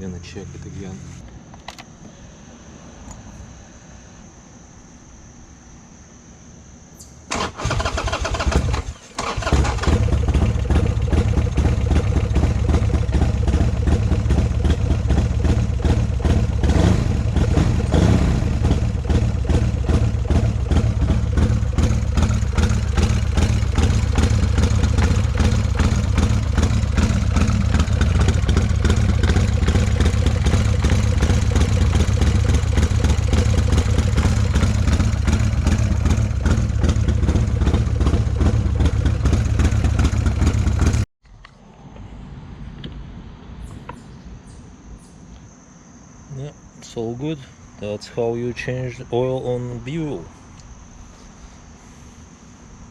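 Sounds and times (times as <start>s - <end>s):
motorcycle engine starting and idling: 7.3s - 41.4s.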